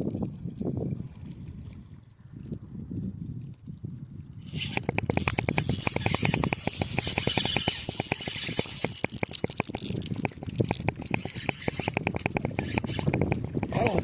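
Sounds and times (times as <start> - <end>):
fishing reel drag clicking: 4.4 - 14.0.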